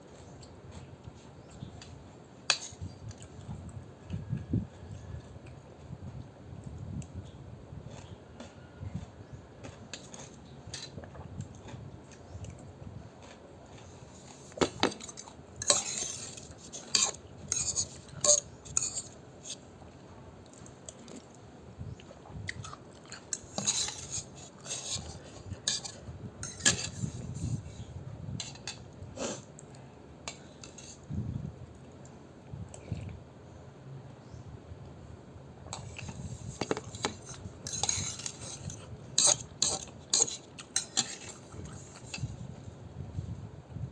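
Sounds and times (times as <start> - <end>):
utensils clinking against bowl: 14.6 - 19.6, 23.1 - 27.2, 35.8 - 42.3.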